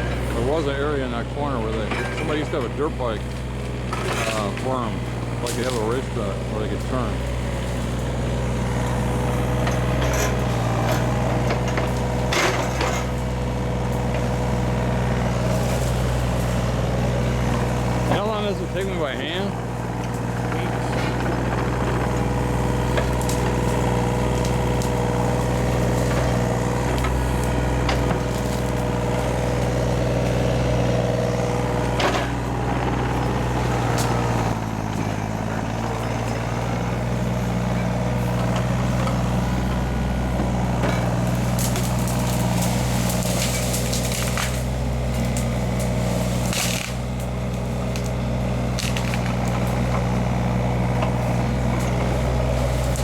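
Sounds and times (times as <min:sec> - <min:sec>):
heavy machine engine under load: 0:00.0 - 0:53.0
wood breaking cracks: 0:40.6 - 0:53.0.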